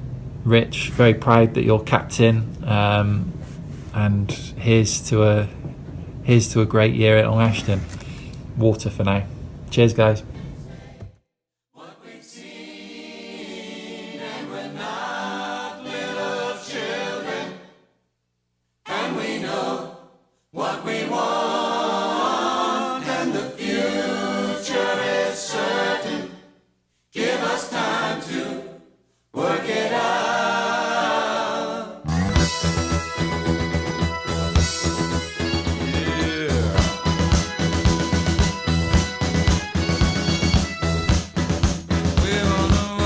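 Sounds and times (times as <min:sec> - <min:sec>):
choir singing: 0:11.8 - 0:17.9, 0:18.8 - 0:32.6.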